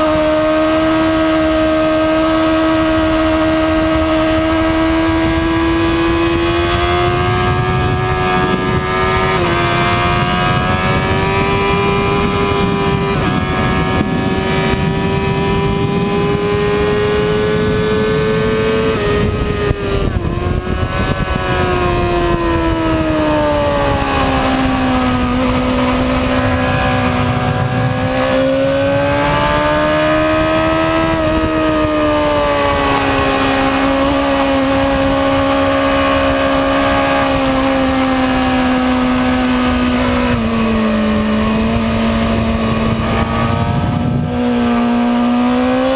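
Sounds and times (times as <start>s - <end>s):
motorcycle engine revving: 0.0s - 45.9s
wind noise: 0.0s - 45.9s.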